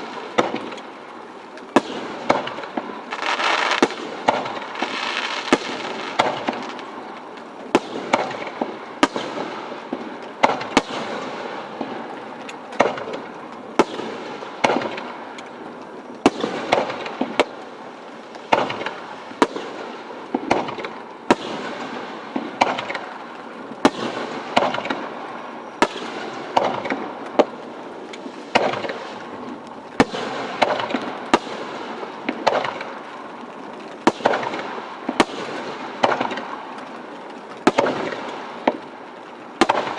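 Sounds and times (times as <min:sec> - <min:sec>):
firework shells bursting: 0:00.0 - 0:17.7.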